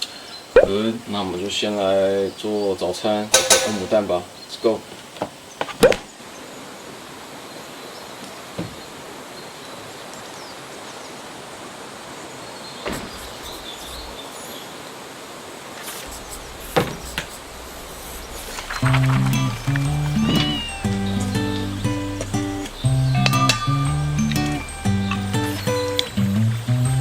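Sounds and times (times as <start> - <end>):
outdoor background hiss: 0.0 - 27.0
plucked notes: 3.4 - 4.1, 16.1 - 27.0
faint high chirps: 16.1 - 26.4
high gliding tone: 16.1 - 26.4
held bass notes: 16.1 - 27.0.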